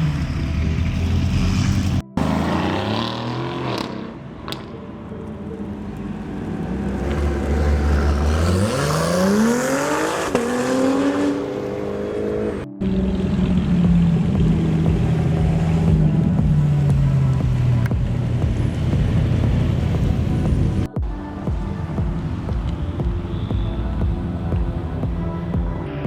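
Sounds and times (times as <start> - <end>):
engine running at steady pitch: 0.0 - 3.1, 11.4 - 26.0
sports car engine revving: 0.0 - 4.7, 5.5 - 20.9, 21.7 - 25.8.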